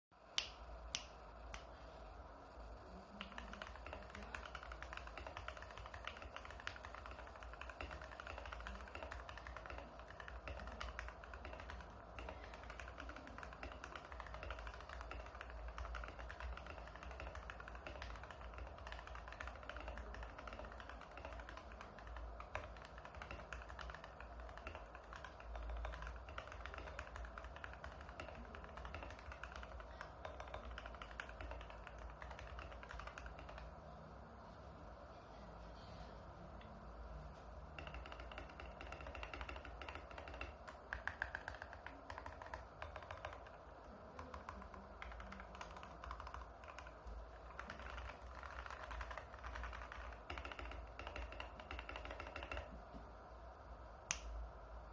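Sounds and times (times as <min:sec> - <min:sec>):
mechanical keyboard typing: 0:02.4 - 0:34.3, 0:36.6 - 0:52.9.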